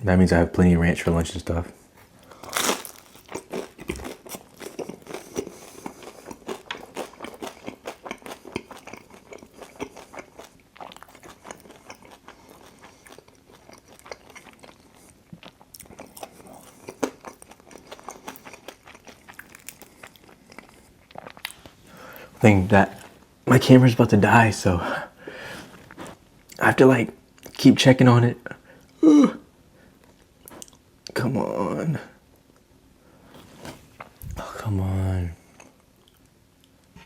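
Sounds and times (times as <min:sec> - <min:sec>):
crunching bites: 0:02.2 - 0:14.7
chewing: 0:02.2 - 0:22.3.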